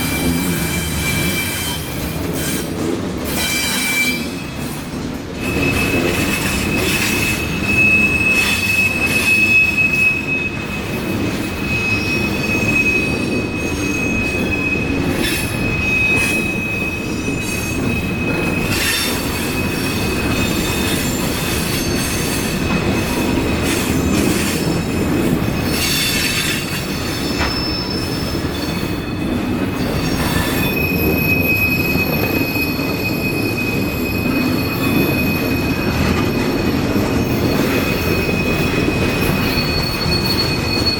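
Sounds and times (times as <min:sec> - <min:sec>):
high wheel squeal: 0:00.0 - 0:04.6, 0:05.4 - 0:40.9
freight cars rumbling on rails: 0:00.0 - 0:40.9.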